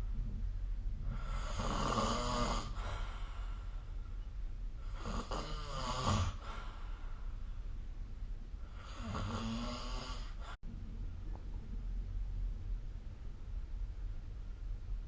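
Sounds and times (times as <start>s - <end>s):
person snoring: 1.1s - 3.0s, 4.8s - 6.6s, 8.7s - 10.5s.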